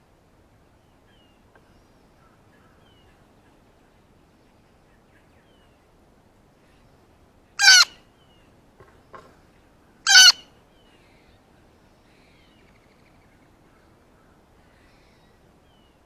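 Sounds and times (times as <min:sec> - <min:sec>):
blue jay loud call: 0:07.6 - 0:07.9, 0:10.1 - 0:10.4
faint high bird chirps: 0:07.6 - 0:07.9, 0:10.1 - 0:10.4.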